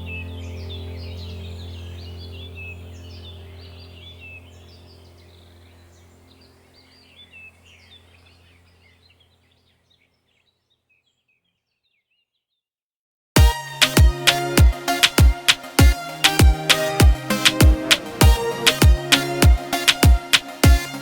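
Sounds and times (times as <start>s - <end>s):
steady low hum: 0.0s - 9.0s
birds chirping and singing: 0.0s - 12.4s.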